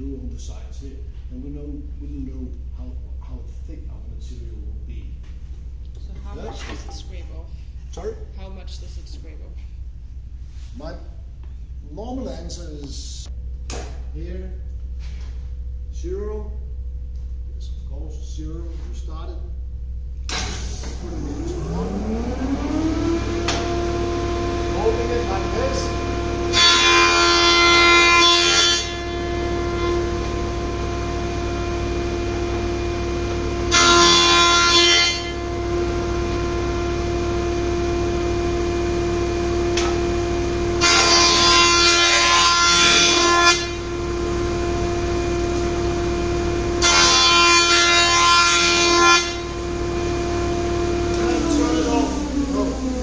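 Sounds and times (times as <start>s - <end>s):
jointer humming: 20.3s - 53.0s.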